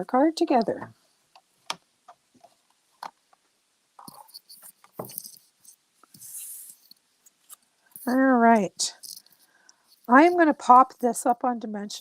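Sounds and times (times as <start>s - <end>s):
paper rustling: 4.0s - 11.4s.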